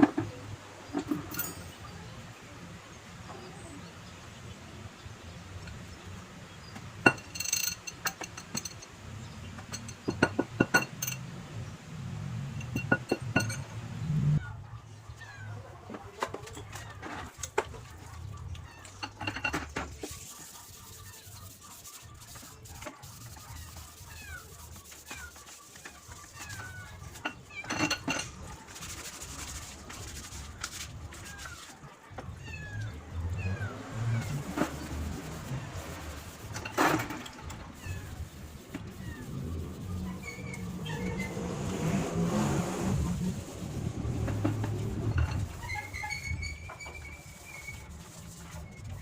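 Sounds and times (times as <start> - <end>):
metallic clinks and knocks: 1.0 - 1.9, 7.0 - 9.0, 9.6 - 11.3, 12.6 - 13.8, 26.6 - 28.4.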